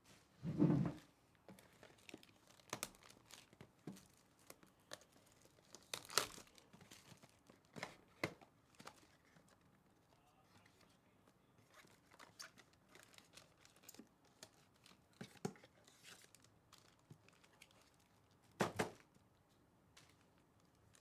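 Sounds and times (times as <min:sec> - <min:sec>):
card pack wrappers crinkling: 0:01.7 - 0:07.8, 0:11.7 - 0:15.0.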